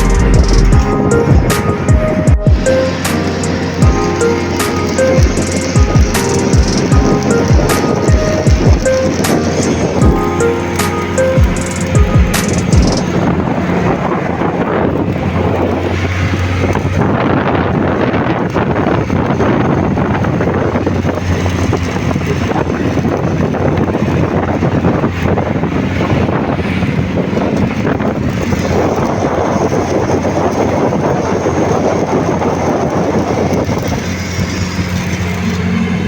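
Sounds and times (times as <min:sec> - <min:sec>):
welding arc crackling: 0:02.5 - 0:13.3.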